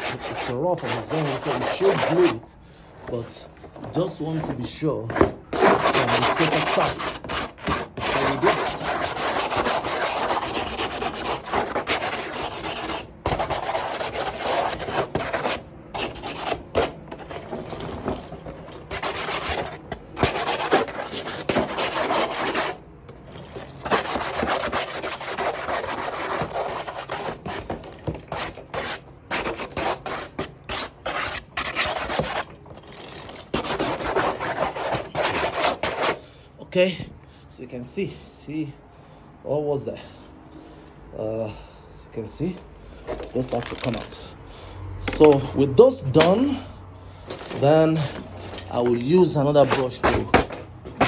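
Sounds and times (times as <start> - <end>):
wire brush scrubbing board: 0.0 - 2.4, 4.0 - 36.2, 47.3 - 51.0.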